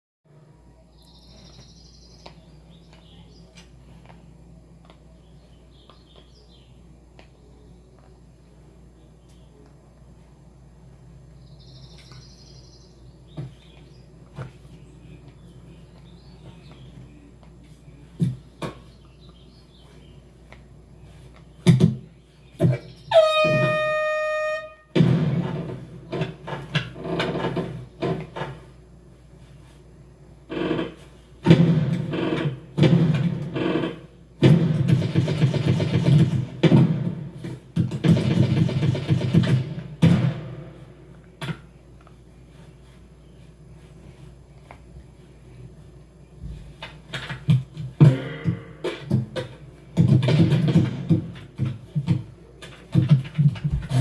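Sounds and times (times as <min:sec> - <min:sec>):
bird-like chirps: 0:00.8 - 0:03.6, 0:11.4 - 0:17.3
horn blast: 0:23.1 - 0:25.0.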